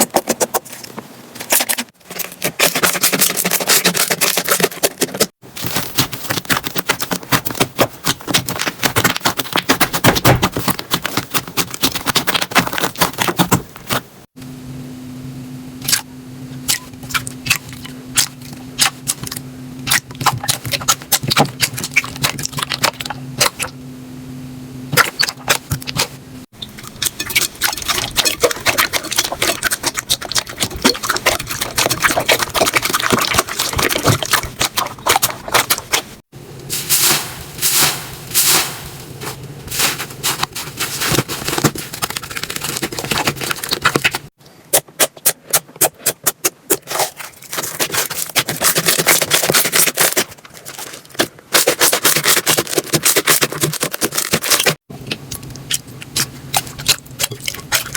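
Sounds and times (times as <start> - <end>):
low steady hum: 0.0 - 44.8, 54.2 - 57.9
slime crackling and popping: 25.0 - 44.3.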